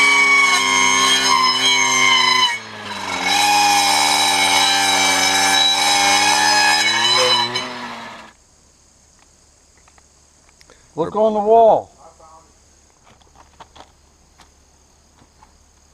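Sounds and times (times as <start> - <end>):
two-stroke brush cutter running: 0.0 - 8.3.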